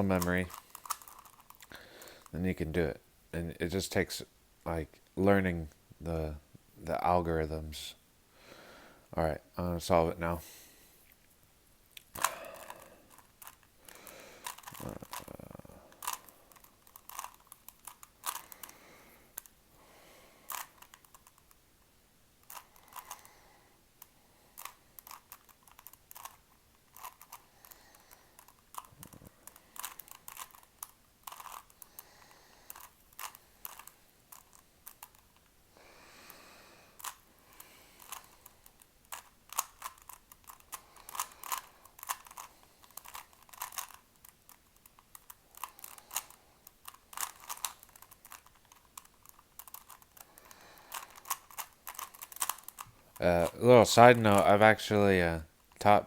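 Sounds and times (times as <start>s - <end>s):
plastic puzzle cube clicking: 0.2s - 2.3s, 12.0s - 19.6s, 20.5s - 21.6s, 22.4s - 23.3s, 24.0s - 35.5s, 37.0s - 53.4s.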